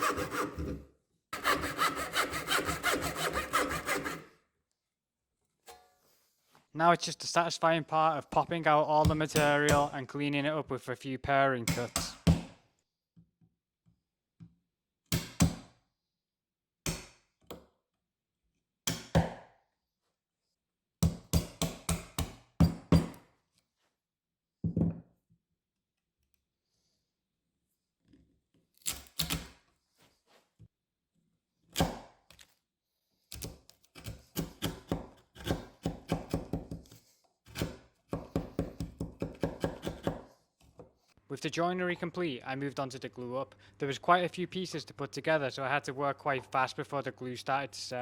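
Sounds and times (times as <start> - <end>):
chisel knocking wood: 34.4 - 36.8, 37.5 - 40.9.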